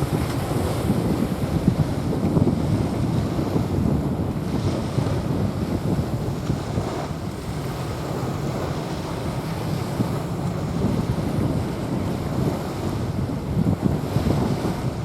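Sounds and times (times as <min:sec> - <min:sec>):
small waves on sandy beach: 0:00.0 - 0:15.0
wind buffeting microphone: 0:00.0 - 0:15.0.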